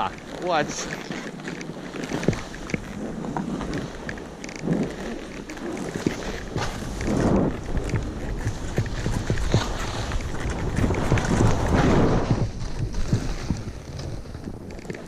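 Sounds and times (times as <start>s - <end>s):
skis swishing over snow: 0.0s - 15.0s
wind on microphone: 0.0s - 15.0s.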